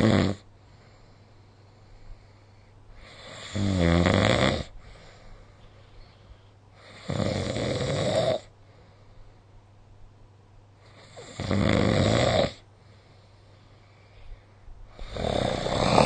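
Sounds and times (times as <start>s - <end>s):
person snoring: 0.0s - 0.4s, 3.0s - 4.8s, 6.8s - 8.5s, 10.9s - 12.6s, 14.9s - 16.0s.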